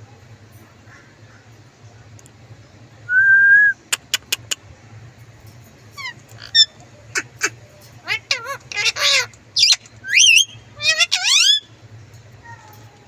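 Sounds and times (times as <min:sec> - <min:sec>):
parakeet whistling: 0:08.8 - 0:11.7.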